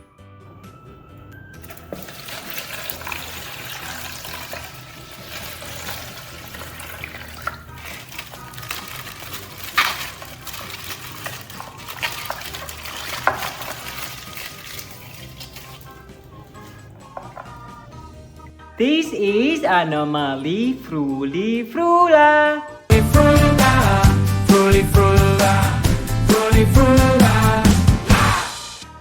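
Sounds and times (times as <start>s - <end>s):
water sloshing in plastic: 0.3s - 18.5s
sharp crackles: 0.4s - 17.4s
plastic crinkling: 0.6s - 18.2s.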